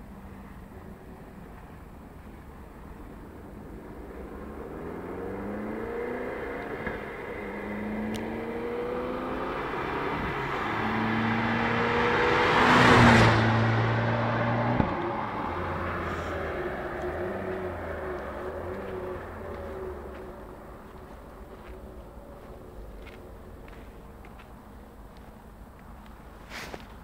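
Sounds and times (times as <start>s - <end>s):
car engine accelerating: 3.0s - 25.0s.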